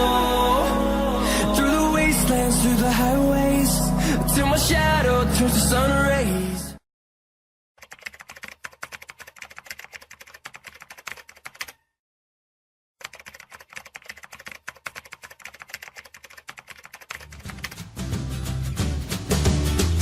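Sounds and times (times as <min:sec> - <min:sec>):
low music: 0:00.0 - 0:06.8
keyboard keys typing: 0:07.8 - 0:11.8, 0:13.0 - 0:18.0.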